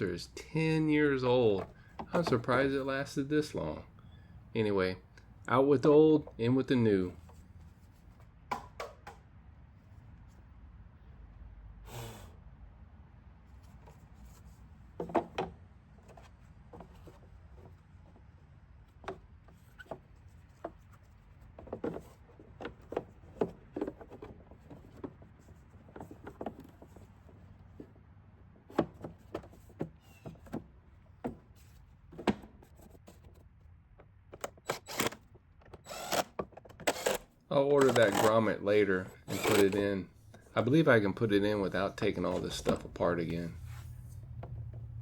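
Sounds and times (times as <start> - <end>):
plastic parts clicking and rubbing: 1.5 - 3.2, 18.8 - 27.9, 28.7 - 40.9.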